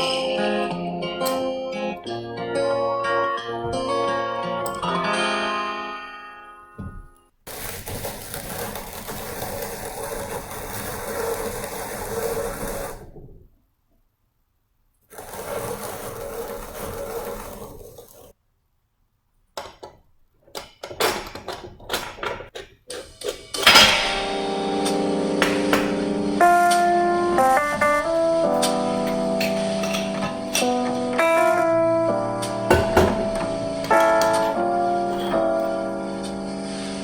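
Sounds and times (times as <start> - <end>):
piano music: 0.0 - 7.3, 23.7 - 37.0
hand coffee grinder crunching beans: 7.5 - 13.1, 15.1 - 18.3
scattered clicks and knocks: 19.6 - 24.3, 25.4 - 26.1, 32.7 - 34.6.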